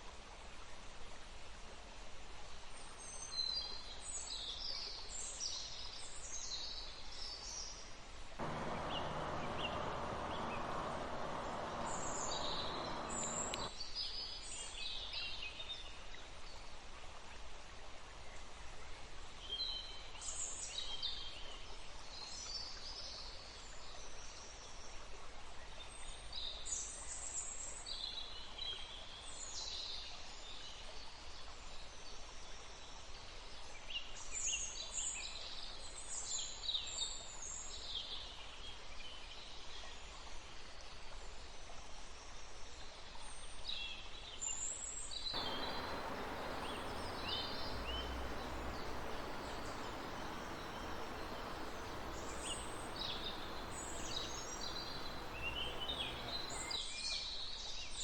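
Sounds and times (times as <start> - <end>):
forest birds chirping: 8.4 - 13.7, 45.4 - 56.8
stream running: 8.4 - 13.7, 45.4 - 56.8.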